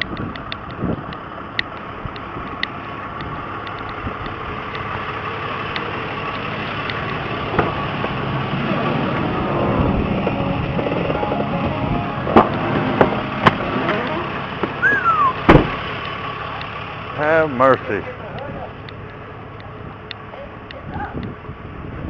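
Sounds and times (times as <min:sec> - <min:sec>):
sharp knock: 0:15.5 - 0:15.8.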